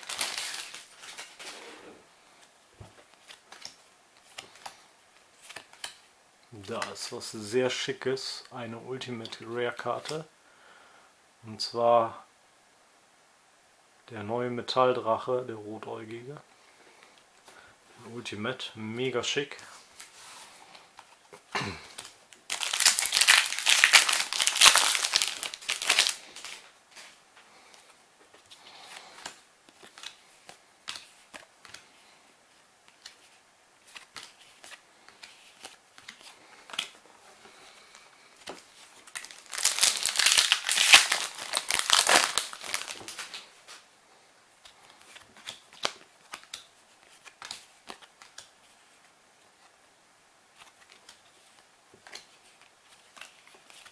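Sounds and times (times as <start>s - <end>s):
foil packs tearing and crinkling: 0.0s - 1.4s, 22.5s - 26.6s, 39.0s - 43.5s
cards being handled: 0.0s - 1.8s, 2.4s - 7.1s, 19.7s - 32.2s, 32.8s - 43.8s, 44.6s - 49.0s, 50.5s - 53.9s.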